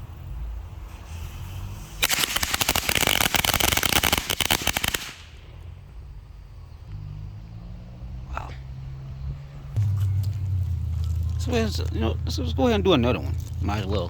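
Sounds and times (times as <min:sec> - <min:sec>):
firecrackers going off: 0:00.0 - 0:05.7.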